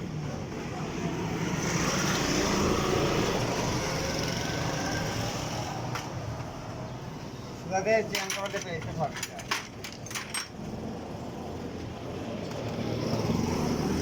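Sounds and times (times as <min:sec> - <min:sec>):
road vehicle passing by: 0:00.4 - 0:07.7, 0:10.6 - 0:14.0.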